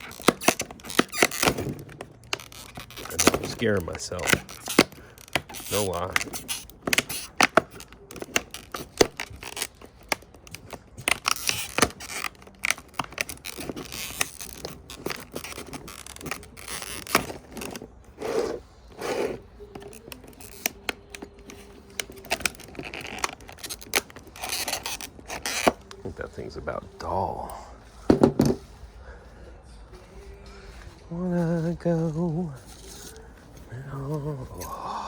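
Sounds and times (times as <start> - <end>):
hand tool scraping and clicking in wood: 0.0 - 26.6.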